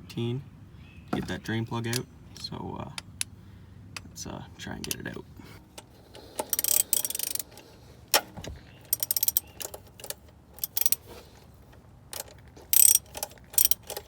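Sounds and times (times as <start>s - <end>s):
ratchet wrench clicking: 5.8s - 7.6s, 8.9s - 11.0s, 12.1s - 14.0s.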